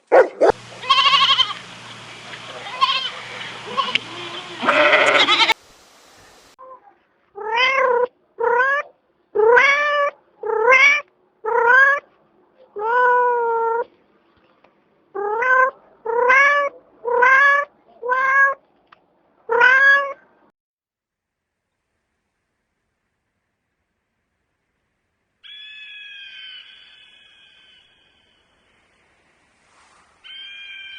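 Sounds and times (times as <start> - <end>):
cat meowing: 0.8 - 1.6, 2.6 - 5.6, 7.4 - 12.0, 15.2 - 18.6, 19.5 - 20.2.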